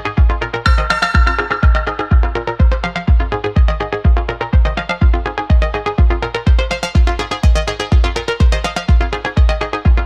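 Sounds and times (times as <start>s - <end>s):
electronic dance music: 0.7s - 3.3s.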